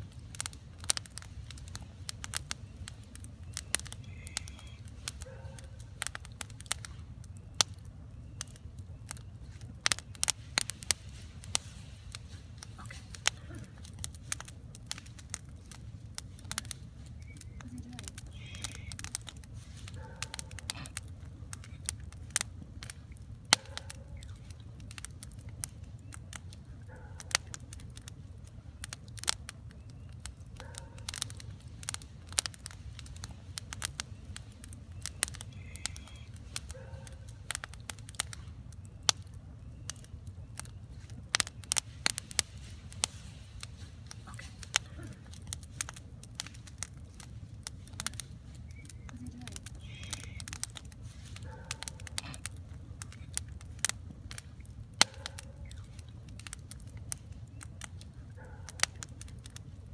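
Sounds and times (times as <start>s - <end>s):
steady low rumble: 0.0s - 23.5s
campfire crackling and popping: 0.0s - 59.9s.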